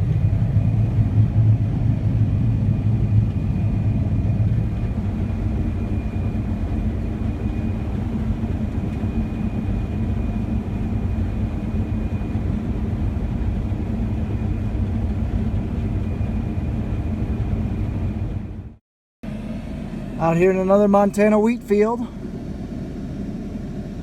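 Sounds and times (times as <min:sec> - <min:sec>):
faint high whine: 0:00.0 - 0:18.2
combine harvester drone: 0:00.0 - 0:24.0.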